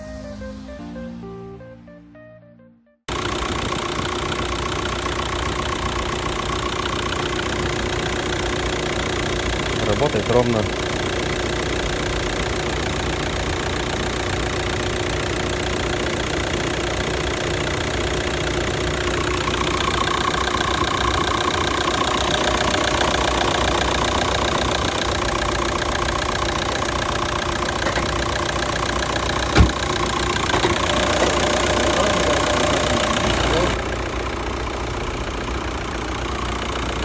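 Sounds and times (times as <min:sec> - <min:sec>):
diesel engine idling: 0:03.1 - 0:37.0
short engine knock: 0:19.2 - 0:33.6.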